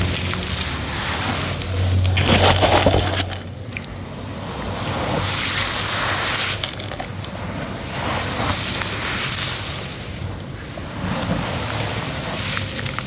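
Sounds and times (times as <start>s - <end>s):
cement crunching: 0.0s - 4.0s, 5.4s - 7.4s.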